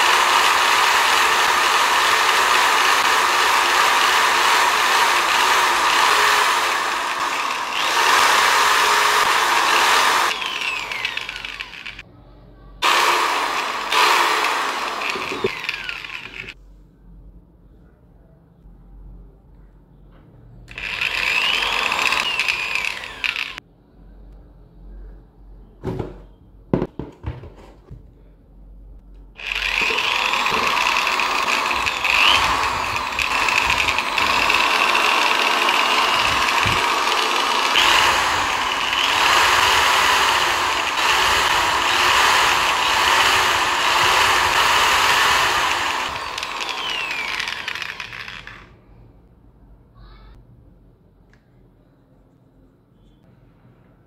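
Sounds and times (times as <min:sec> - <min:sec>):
drill sharp clicks: 0:00.0 - 0:12.0, 0:12.8 - 0:16.6, 0:20.7 - 0:23.6, 0:29.4 - 0:48.7
electric drill running: 0:00.0 - 0:12.0, 0:12.8 - 0:16.6, 0:20.7 - 0:23.6, 0:29.4 - 0:48.8.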